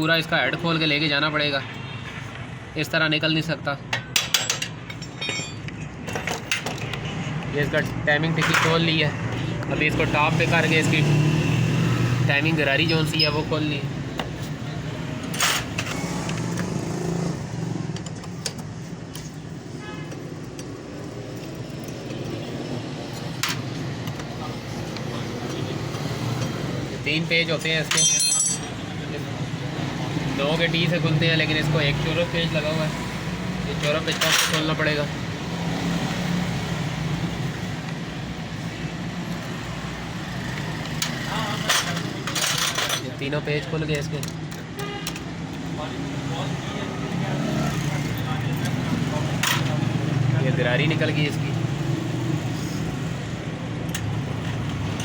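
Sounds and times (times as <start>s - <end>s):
metal hand tools clinking: 4.0s - 6.8s, 27.8s - 28.8s.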